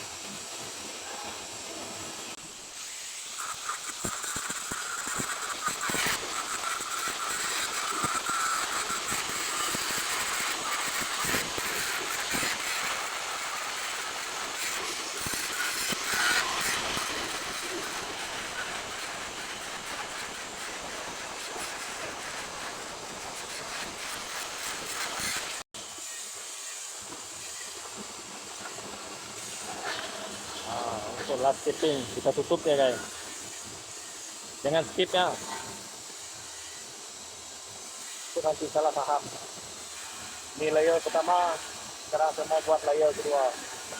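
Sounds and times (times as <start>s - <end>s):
welding arc crackling hiss: 0.0s - 43.9s
welding pops: 3.4s - 25.6s.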